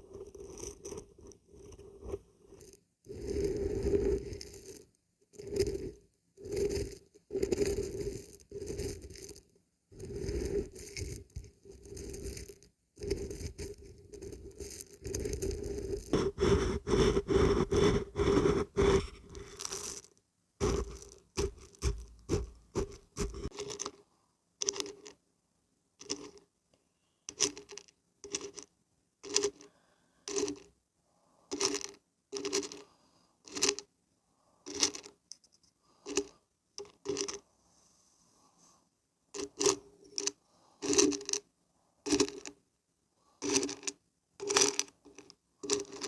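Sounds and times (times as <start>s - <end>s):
beans rattling when shaken: 45.6s - 46.0s.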